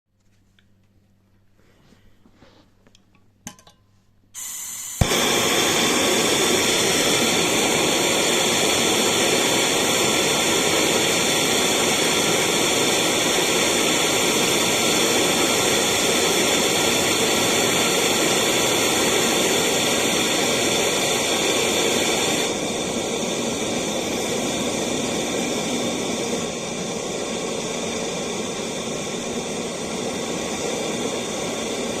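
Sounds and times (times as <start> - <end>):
torch igniter click: 4.4 - 13.6
gas torch hissing: 4.4 - 32.0
torch flame rushing: 4.4 - 32.0.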